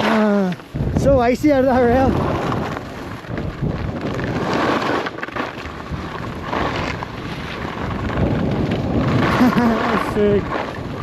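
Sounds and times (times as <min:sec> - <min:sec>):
skis scraping over snow: 0:00.0 - 0:11.0
wind buffeting microphone: 0:00.6 - 0:11.0.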